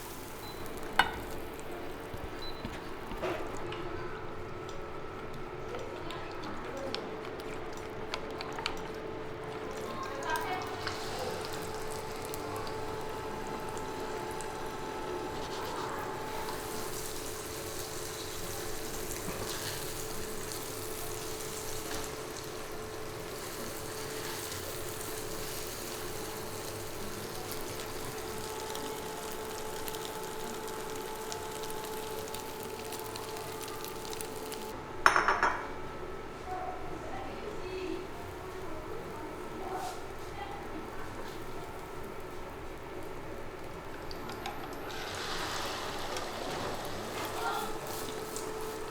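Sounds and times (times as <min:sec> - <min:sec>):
beans hissing in a wok: 0:14.7 - 0:34.7, 0:44.9 - 0:48.9.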